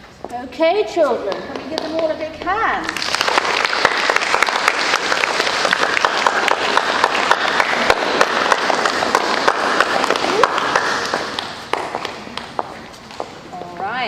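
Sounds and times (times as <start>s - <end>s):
children applauding: 2.5s - 12.8s.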